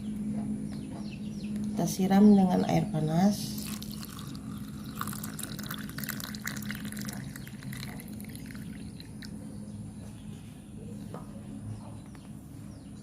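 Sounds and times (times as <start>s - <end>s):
steady low hum: 0.0s - 13.0s
water poured into a glass: 3.6s - 9.3s.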